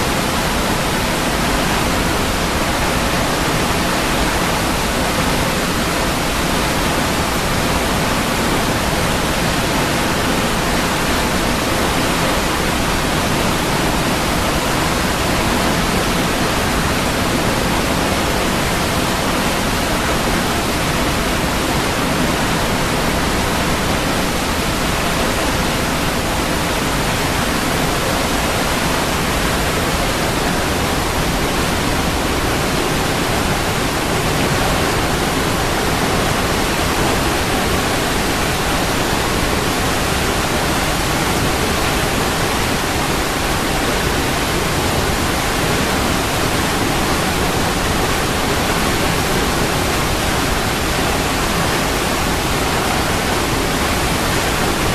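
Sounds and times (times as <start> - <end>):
waterfall rushing: 0.0 - 54.9.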